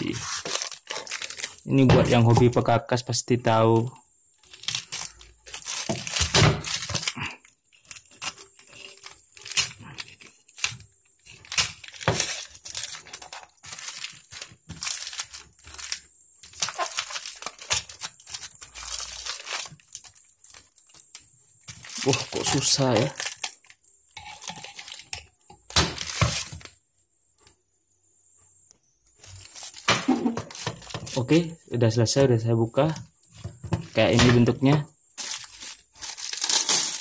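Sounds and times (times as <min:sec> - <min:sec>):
packing tape ripping: 0:00.0 - 0:01.7, 0:04.5 - 0:20.7, 0:21.8 - 0:23.7, 0:35.2 - 0:37.0
plastic wrapping crinkling: 0:00.0 - 0:02.8, 0:03.6 - 0:26.8, 0:29.1 - 0:31.6, 0:32.8 - 0:37.0.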